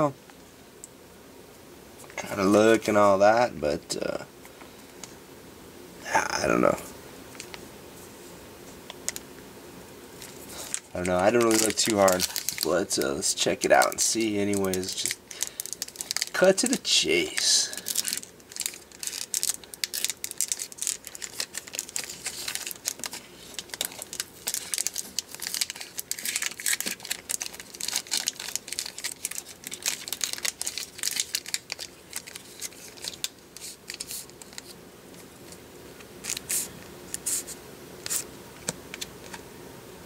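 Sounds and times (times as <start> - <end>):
wrapper crinkling: 10.2 - 34.8, 36.2 - 37.5
cards shuffling: 10.2 - 39.4.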